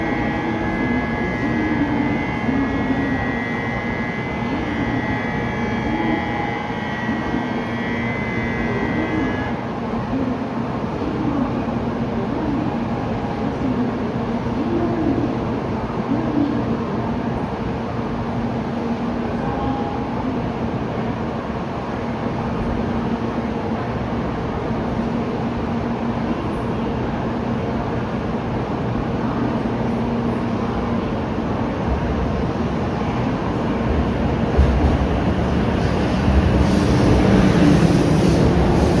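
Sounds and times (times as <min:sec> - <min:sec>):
steady high tone: 0:00.0 - 0:09.6
train hum and high whine: 0:00.0 - 0:39.0.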